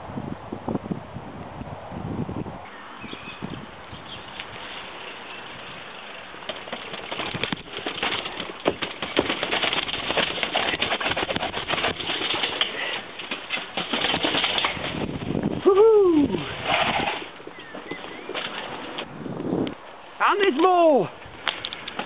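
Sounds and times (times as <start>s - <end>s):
rushing wind: 0.0s - 22.0s
bike tyre noise: 3.1s - 19.9s
bike rattling: 4.0s - 19.4s.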